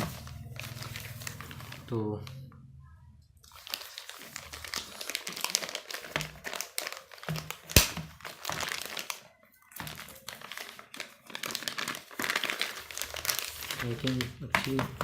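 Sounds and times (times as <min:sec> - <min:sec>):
packaging crinkling: 0:00.0 - 0:02.4, 0:03.4 - 0:15.0
sharp snap: 0:07.8 - 0:08.0.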